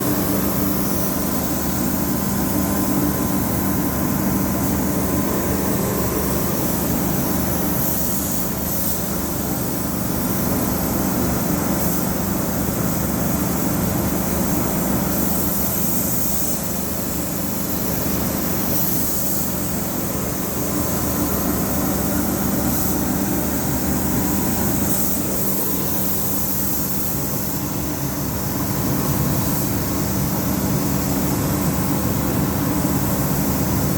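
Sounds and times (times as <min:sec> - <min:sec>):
spray gun hissing: 0:18.6 - 0:27.6.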